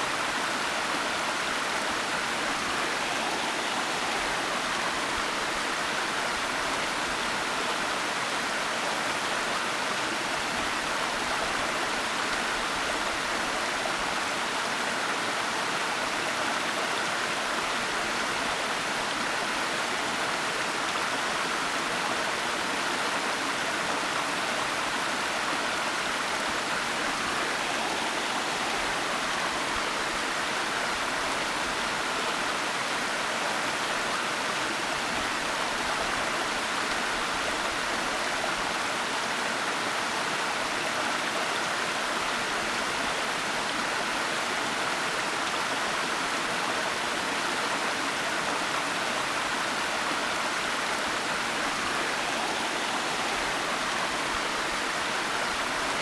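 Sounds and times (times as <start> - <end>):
waterfall rushing: 0.0 - 7.4, 24.6 - 33.1, 47.7 - 56.0.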